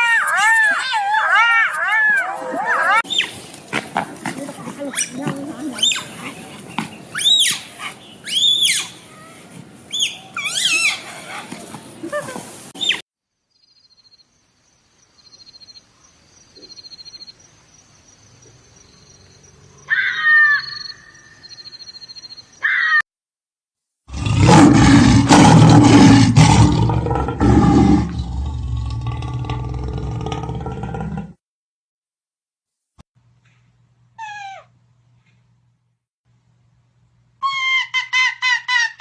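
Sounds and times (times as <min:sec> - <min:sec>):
high calls falling in pitch: 0:19.9 - 0:21.6
large animal roaring: 0:24.1 - 0:31.4.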